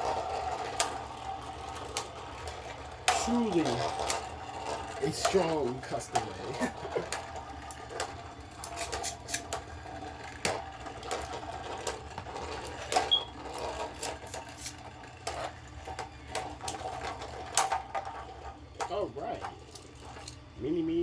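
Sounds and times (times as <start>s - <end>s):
spinning tops clacking together: 0.0s - 20.5s
spinning tops whirring: 0.0s - 21.0s.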